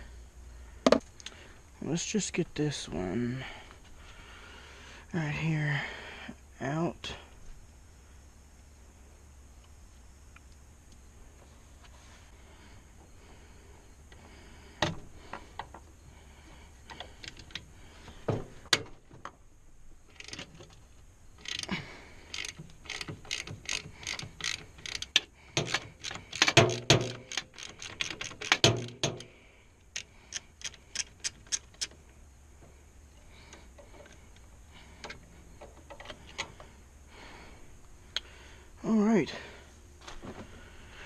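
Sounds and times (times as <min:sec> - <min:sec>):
socket ratchet clicking: 0:20.1 - 0:20.6, 0:21.4 - 0:21.7, 0:22.3 - 0:32.0.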